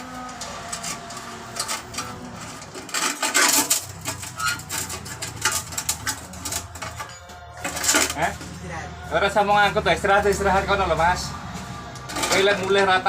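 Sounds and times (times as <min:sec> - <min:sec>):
objects clattering while handled: 0:00.0 - 0:08.7, 0:09.6 - 0:13.0.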